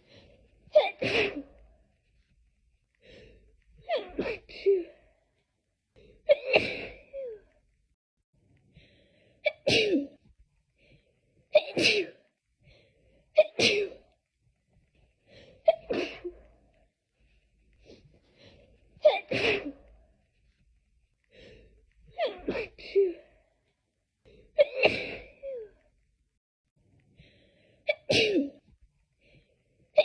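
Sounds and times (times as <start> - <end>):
person sneezing: 0.8 - 1.6, 11.6 - 12.2, 19.0 - 19.8, 27.9 - 28.6.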